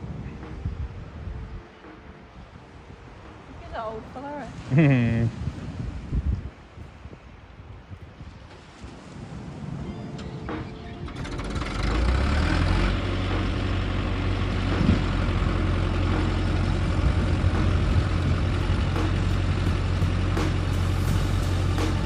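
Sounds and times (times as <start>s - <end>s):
bulldozer diesel engine running: 10.9s - 22.0s.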